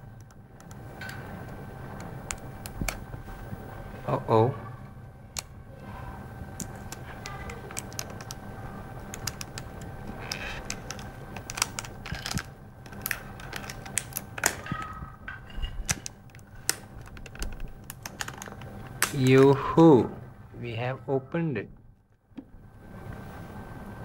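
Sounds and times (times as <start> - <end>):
faint steady hum: 0.0 - 24.0
packaging crinkling: 9.0 - 14.8, 15.9 - 19.2.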